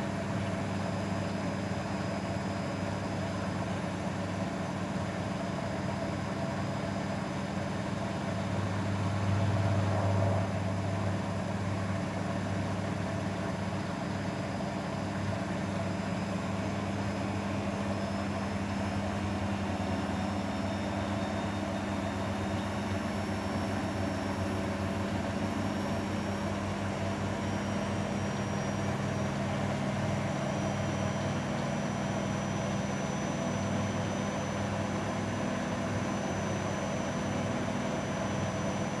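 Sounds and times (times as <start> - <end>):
washing machine motor hum: 0.0 - 39.0
high whine rising in pitch: 8.9 - 11.4.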